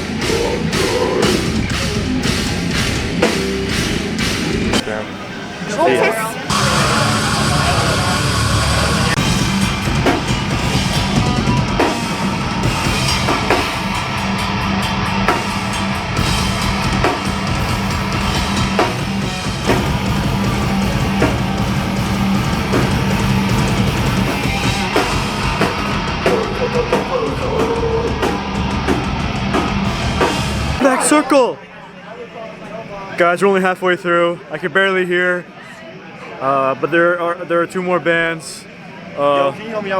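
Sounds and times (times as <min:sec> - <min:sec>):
pounding bass drum: 0:00.0 - 0:04.8, 0:06.5 - 0:30.8
hardcore rock music: 0:00.0 - 0:05.0, 0:05.8 - 0:30.8.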